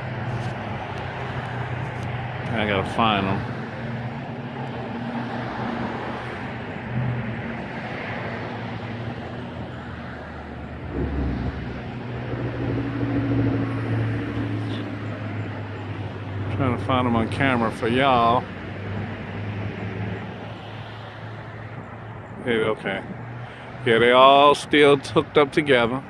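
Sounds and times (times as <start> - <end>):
vehicle engine: 0.0 - 25.5
traffic noise: 0.0 - 26.0.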